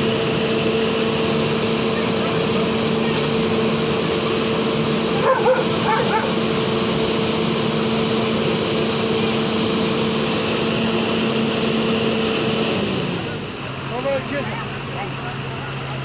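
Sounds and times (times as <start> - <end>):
heavy engine humming: 0.0 - 16.0
dog yelping: 5.1 - 6.5.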